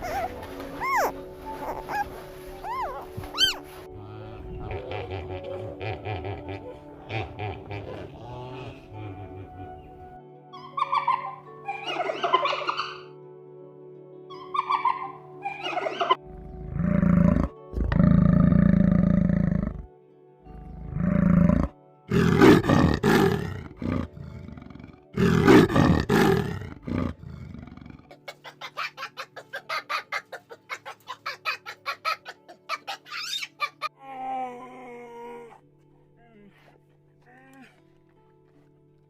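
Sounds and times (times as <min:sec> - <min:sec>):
animal calls: 0:00.0 - 0:13.1, 0:14.3 - 0:17.5, 0:20.8 - 0:34.0
background music: 0:00.0 - 0:39.0.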